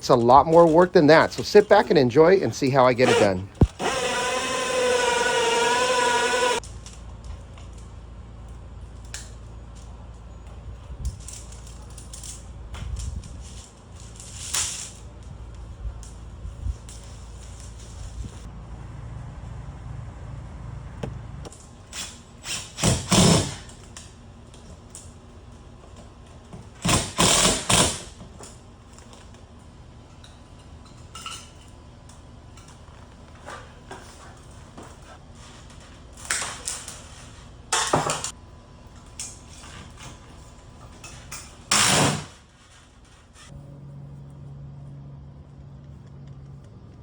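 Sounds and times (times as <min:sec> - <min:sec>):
tools clattering and scraping: 0:30.1 - 0:31.8, 0:32.6 - 0:38.4, 0:39.0 - 0:43.6.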